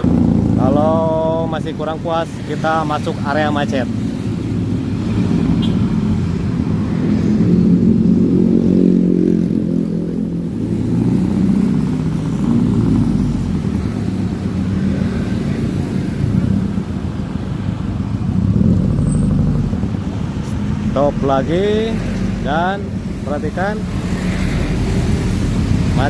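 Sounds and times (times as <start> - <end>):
scooter engine running: 0.0 - 21.6.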